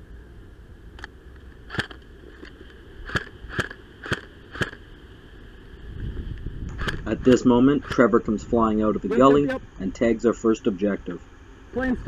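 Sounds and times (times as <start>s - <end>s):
airsoft gun shots: 1.7s - 2.0s, 3.0s - 4.8s.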